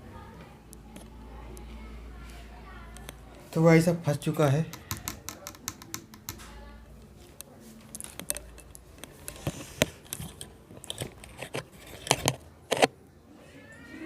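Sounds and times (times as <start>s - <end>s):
hands clicking and tapping laptop: 4.7s - 6.4s.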